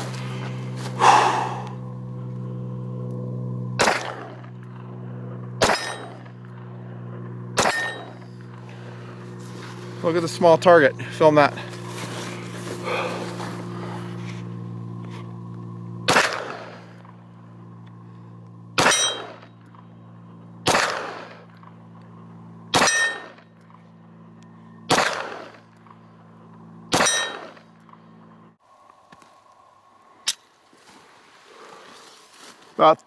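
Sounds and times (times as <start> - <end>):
pistol shots: 3.8 - 4.4, 5.6 - 6.2, 7.6 - 8.1, 16.1 - 16.8, 18.8 - 19.4, 20.6 - 21.4, 22.7 - 23.4, 24.9 - 25.6, 26.9 - 27.6
metallic ring: 7.6 - 8.2, 18.9 - 19.4.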